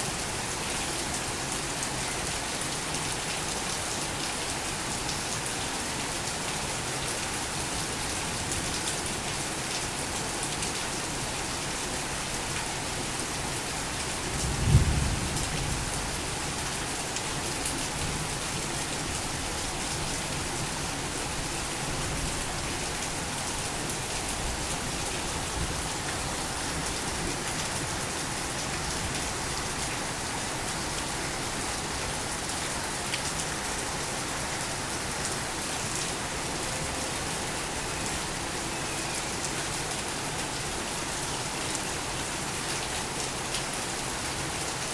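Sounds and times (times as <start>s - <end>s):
torrential rain: 0.0s - 44.9s.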